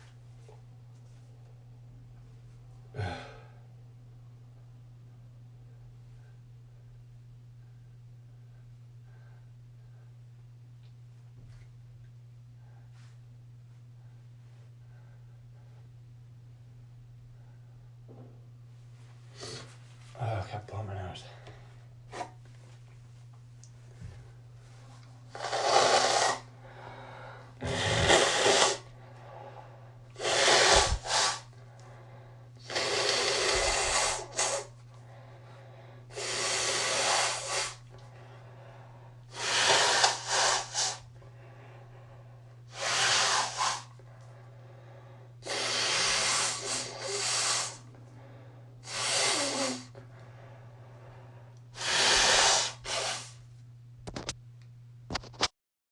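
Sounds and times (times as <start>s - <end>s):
person blowing nose: 25.3s - 26.5s, 27.6s - 28.9s, 30.2s - 31.5s, 32.6s - 34.7s, 36.1s - 37.9s, 39.3s - 41.0s, 42.7s - 43.9s, 45.4s - 47.8s, 48.8s - 50.0s, 51.8s - 53.4s.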